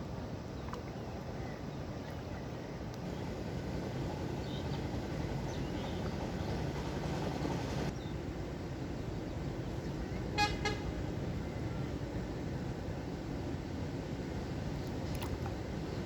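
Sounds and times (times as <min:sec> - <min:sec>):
water rushing through sluice gate: 0:03.0 - 0:07.9.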